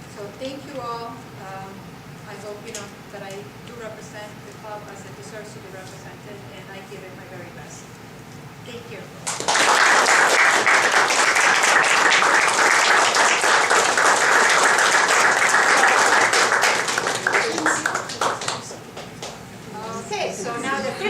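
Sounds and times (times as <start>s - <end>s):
audience applauding: 9.2s - 19.4s.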